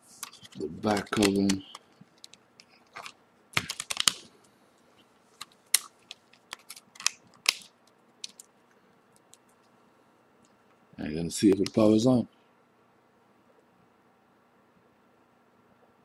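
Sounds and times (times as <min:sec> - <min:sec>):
plastic clicks and snaps: 0:00.2 - 0:04.3, 0:05.4 - 0:08.5.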